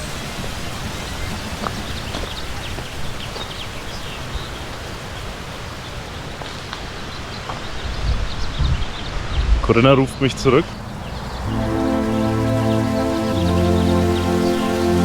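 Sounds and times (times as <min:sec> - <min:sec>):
rushing water: 0:00.0 - 0:07.0, 0:10.2 - 0:15.0.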